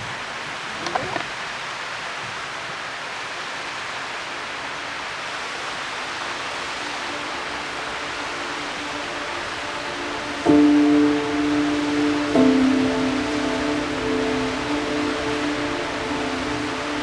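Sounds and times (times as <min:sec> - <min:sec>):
flowing water rushing: 0:00.0 - 0:17.0
faint sustained musical notes: 0:05.5 - 0:17.0.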